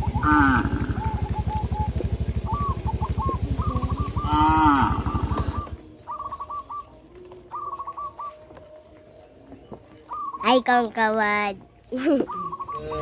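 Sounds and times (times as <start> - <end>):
low rapid pulsing rumble: 0.0 - 6.0
birds chirping: 0.0 - 13.0
cow mooing: 4.3 - 5.6, 12.7 - 13.0.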